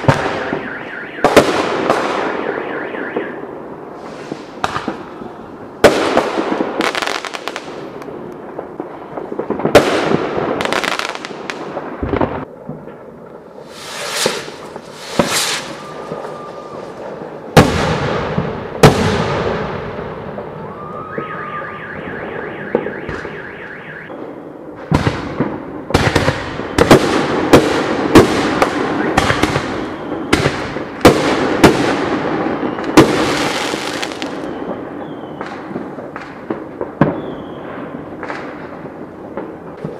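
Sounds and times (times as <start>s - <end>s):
fireworks bangs with rumbling echo: 0.0s - 21.4s, 22.2s - 39.9s
rapid high-pitched crackle: 13.6s - 17.3s.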